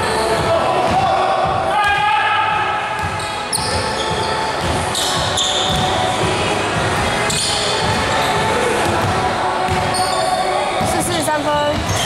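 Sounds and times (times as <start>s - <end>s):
basketball bouncing on court: 0.4s - 6.0s, 6.8s - 10.0s, 10.8s - 12.0s
shoes squealing: 3.0s - 6.2s, 6.9s - 12.0s.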